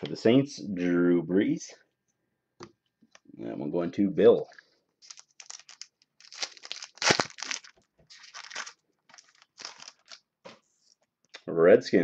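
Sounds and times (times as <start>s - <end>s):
trading cards rustling and scraping: 5.0s - 11.1s.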